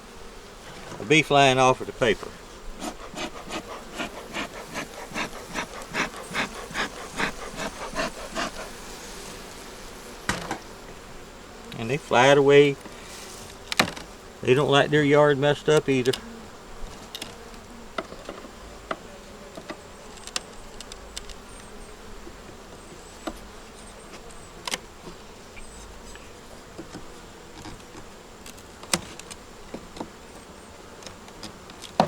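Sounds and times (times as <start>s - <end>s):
honey bees buzzing: 0.0s - 32.0s
wooden hive frames knocking: 2.1s - 9.4s, 10.2s - 11.0s, 13.6s - 14.1s.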